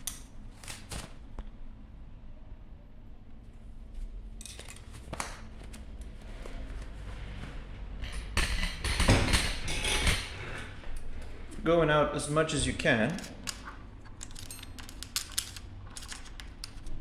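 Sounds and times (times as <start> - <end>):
metal tools clicking and knocking: 4.4 - 4.9, 8.0 - 10.5, 12.8 - 17.0
metal parts scraping and rattling: 4.4 - 5.0, 8.0 - 11.6, 12.6 - 17.0.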